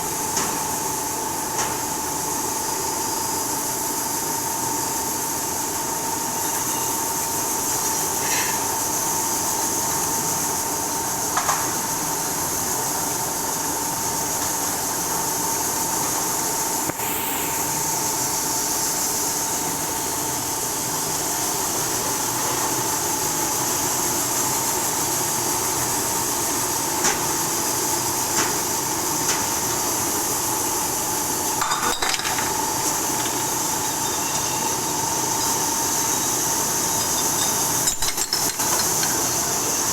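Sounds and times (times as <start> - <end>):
bottle washing machine whirring: 0.0 - 39.9
glass clinking: 31.6 - 32.7, 34.0 - 34.8, 36.9 - 39.3.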